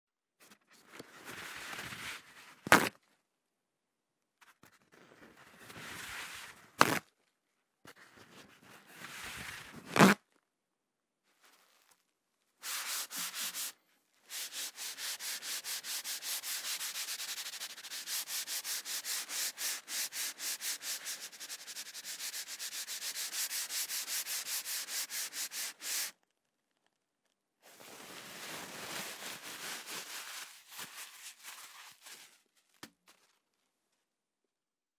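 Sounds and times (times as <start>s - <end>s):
paper towel tearing off roll: 2.6s - 3.0s, 6.8s - 7.1s, 9.1s - 10.2s
paper towel wiping surface: 12.6s - 26.1s, 27.7s - 32.4s.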